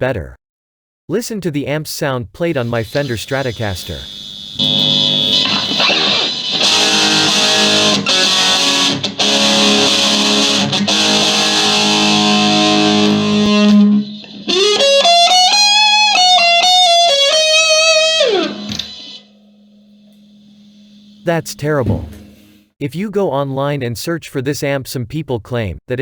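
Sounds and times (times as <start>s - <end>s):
amplifier hum: 3.2s - 14.2s, 17.3s - 22.7s
distorted electric guitar: 3.8s - 22.4s.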